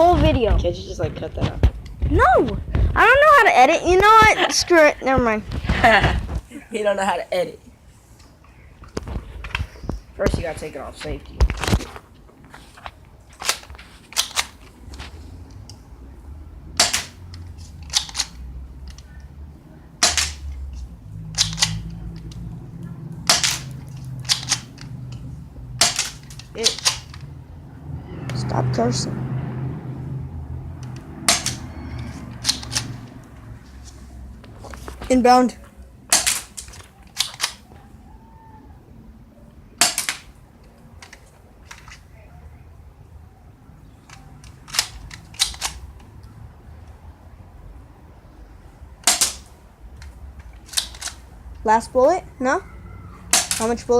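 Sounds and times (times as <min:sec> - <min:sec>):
airsoft pistol cracks: 0:16.8 - 0:17.2, 0:20.0 - 0:20.4, 0:21.4 - 0:21.9, 0:23.3 - 0:23.7, 0:25.8 - 0:27.2, 0:36.1 - 0:37.6, 0:39.8 - 0:40.3, 0:49.0 - 0:49.5, 0:53.3 - 0:53.7
airsoft pistol firing: 0:20.0 - 0:20.4, 0:23.3 - 0:23.7, 0:39.8 - 0:40.2, 0:49.1 - 0:49.5.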